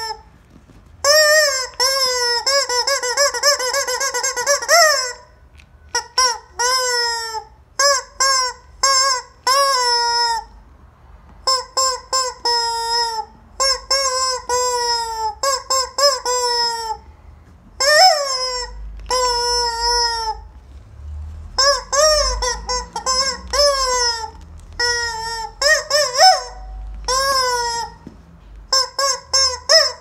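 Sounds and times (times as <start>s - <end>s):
rubber chicken toy squawking: 0.0s - 0.3s, 1.0s - 10.6s, 11.4s - 17.1s, 17.8s - 20.6s, 21.5s - 28.1s, 28.7s - 30.0s.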